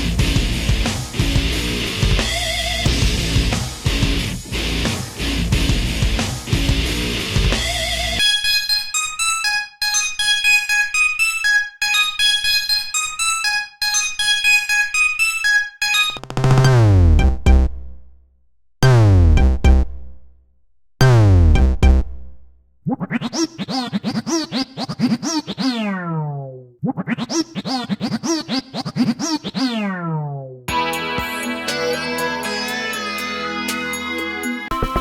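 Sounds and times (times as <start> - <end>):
electronic ringtone: 8.2 - 17.6, 30.7 - 35.0.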